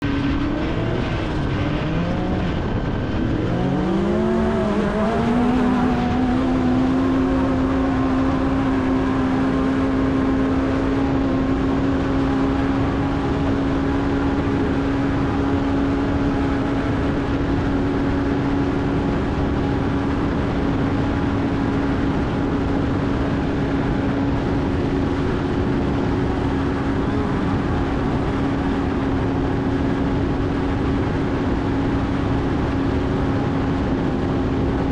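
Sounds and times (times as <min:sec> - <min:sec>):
heavy rushing noise: 0:00.0 - 0:34.9
race vehicle engine revving: 0:00.0 - 0:34.9.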